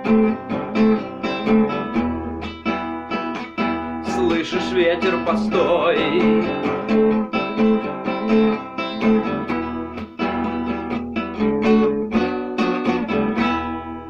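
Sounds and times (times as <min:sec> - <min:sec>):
acoustic guitar strumming chords: 0:00.0 - 0:14.0.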